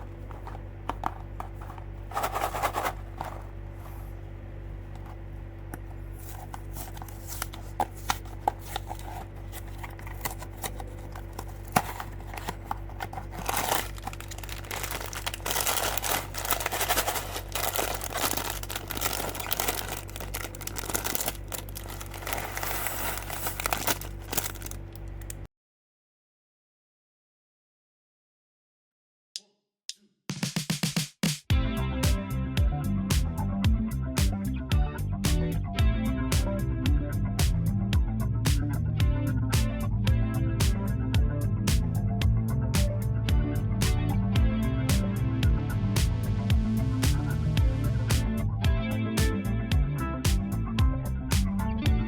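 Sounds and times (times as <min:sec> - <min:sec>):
cardboard rustling: 0:00.0 - 0:04.2, 0:05.9 - 0:25.4
steady low hum: 0:00.0 - 0:25.5, 0:31.6 - 0:52.0
plastic bags crinkling and tearing: 0:06.2 - 0:25.5
plastic pieces clicking and knocking: 0:08.2 - 0:25.4.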